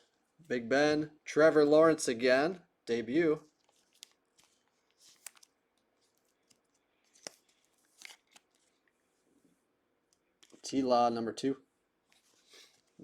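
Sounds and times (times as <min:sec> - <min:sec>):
trading cards rustling and clicking: 0:03.5 - 0:08.9.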